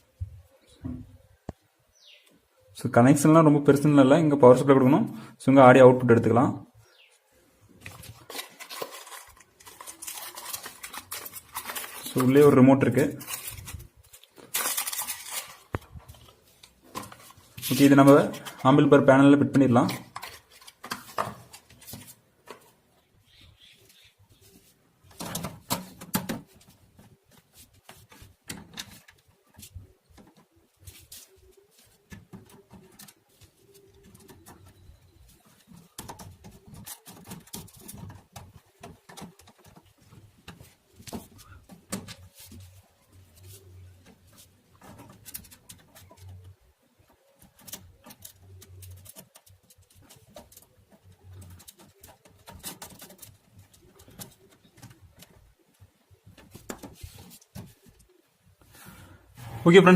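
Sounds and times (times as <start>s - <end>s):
clicks and knocks of parts: 13.2s - 18.7s, 25.0s - 30.5s, 47.3s - 58.1s.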